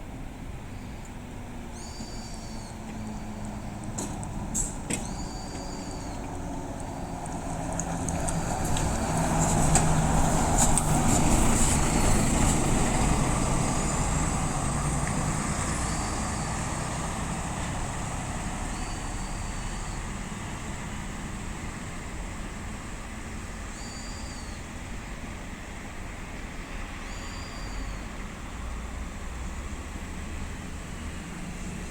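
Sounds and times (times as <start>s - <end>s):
bus engine and tyre noise: 0.0s - 31.9s
clicks of wheels over crossing: 2.0s - 20.7s.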